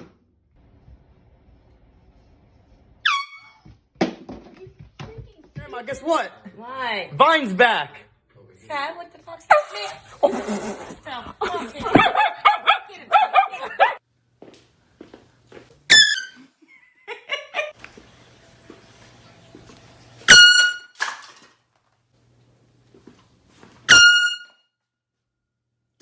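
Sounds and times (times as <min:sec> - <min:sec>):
air horn blasts: 0:20.3 - 0:21.0, 0:23.9 - 0:24.6.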